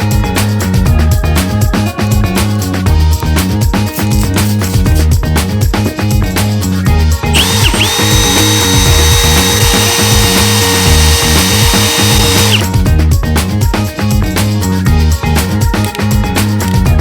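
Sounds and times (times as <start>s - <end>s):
background music with beat: 0.0s - 17.0s
power drill whining: 7.4s - 12.8s.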